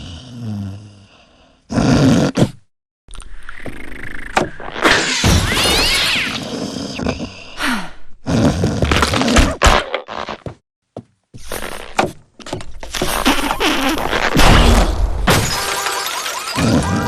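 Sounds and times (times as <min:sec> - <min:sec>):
man snoring loudly: 0:00.0 - 0:02.5.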